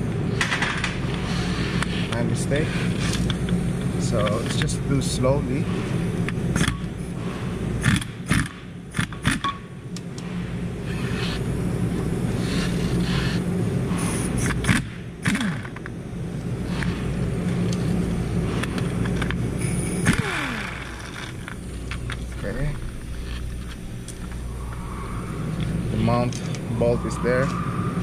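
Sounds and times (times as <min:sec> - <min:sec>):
low mechanical hum: 0:00.0 - 0:28.0.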